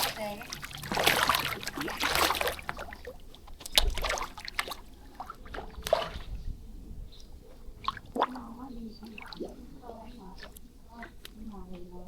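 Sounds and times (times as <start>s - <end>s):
sharp slaps on water: 0.0s - 4.8s, 5.5s - 6.3s
water splashing and sloshing: 0.0s - 12.0s.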